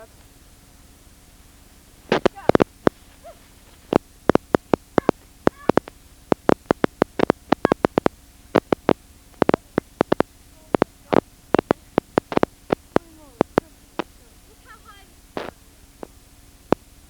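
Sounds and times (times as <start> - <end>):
faint steady hum: 0.0 - 17.0
rapid sharp clicks: 2.1 - 3.0, 3.8 - 14.3, 15.4 - 17.0.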